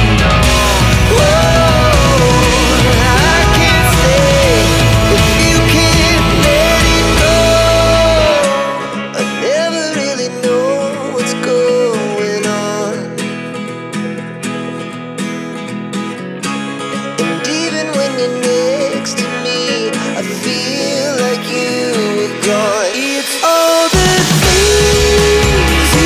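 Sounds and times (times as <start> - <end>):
heavy bass: 0.0 - 8.5, 24.0 - 26.0
song with sung melody and guitar: 0.0 - 26.0.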